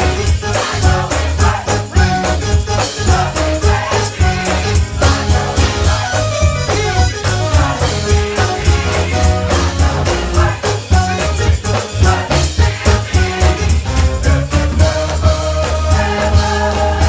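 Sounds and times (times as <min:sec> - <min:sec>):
choir singing: 0:00.0 - 0:17.0
drums: 0:00.0 - 0:17.0
heavy pulsing bass line: 0:00.0 - 0:17.0
rattling hand percussion: 0:00.0 - 0:17.0.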